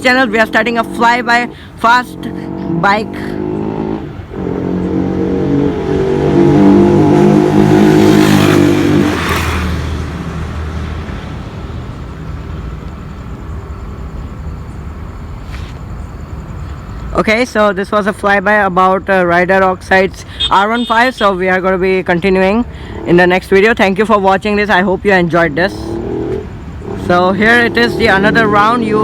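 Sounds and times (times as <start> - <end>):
motorcycle passing at speed: 0.0 - 11.6, 25.5 - 29.0.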